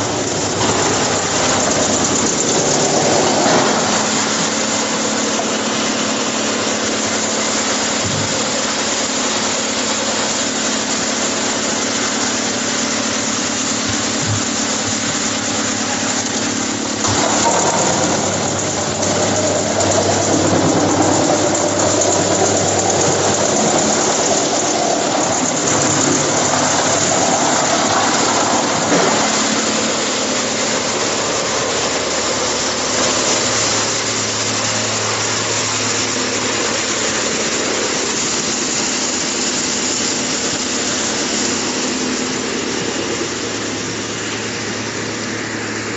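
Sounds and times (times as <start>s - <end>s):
wood chipper running: 0.0s - 45.9s
wood being chipped: 13.9s - 31.2s.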